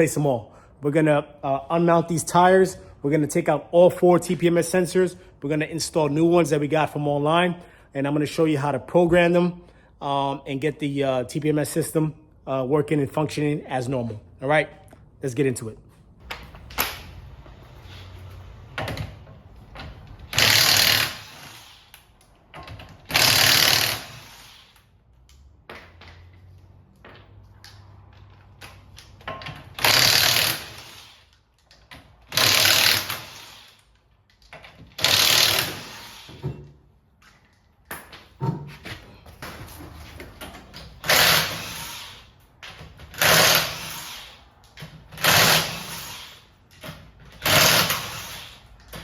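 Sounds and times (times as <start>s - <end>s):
power tool bursts: 20.3s - 21.9s, 23.1s - 24.8s, 29.8s - 31.3s, 32.3s - 33.9s, 35.0s - 36.5s, 41.0s - 42.3s, 43.1s - 44.4s, 45.2s - 46.6s, 47.4s - 48.6s.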